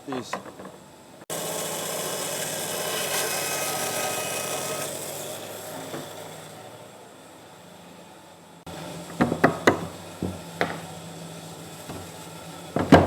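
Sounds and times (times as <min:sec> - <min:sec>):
power saw cutting wood: 0:01.3 - 0:07.9, 0:08.6 - 0:13.0.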